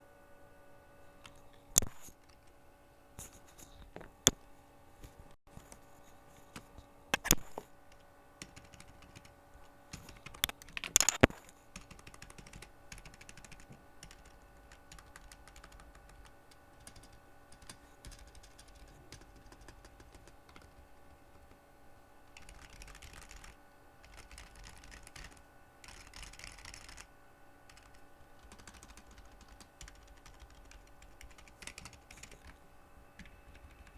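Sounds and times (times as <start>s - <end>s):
keyboard key clicks: 10.0s - 11.4s.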